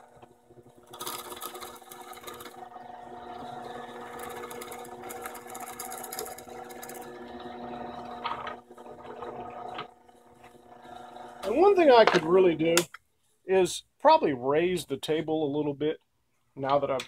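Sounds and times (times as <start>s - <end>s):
drill press motor hum: 0.0s - 12.6s
drill bit cutting wood: 0.9s - 9.0s.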